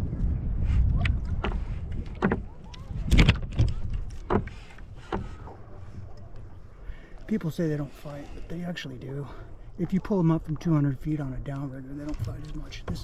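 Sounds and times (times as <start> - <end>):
low rumble: 0.0 - 6.8
knocks and clatters on kayak: 1.2 - 6.5, 11.9 - 13.0.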